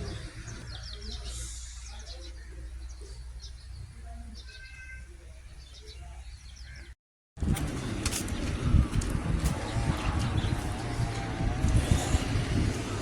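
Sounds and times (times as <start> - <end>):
small birds chirping: 0.0 - 7.0, 7.7 - 13.0.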